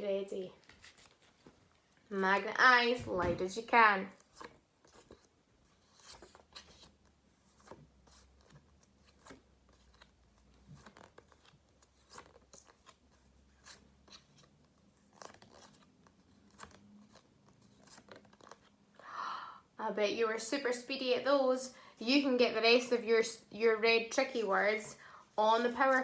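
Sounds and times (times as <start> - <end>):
flash cards clicking and rustling: 7.5 - 18.8.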